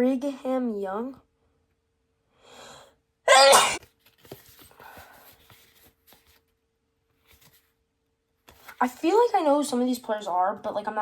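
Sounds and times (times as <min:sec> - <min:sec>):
intake of breath: 0:02.3 - 0:03.0
person sneezing: 0:03.3 - 0:03.8
trading cards rustling and clicking: 0:03.8 - 0:06.5, 0:08.5 - 0:08.8.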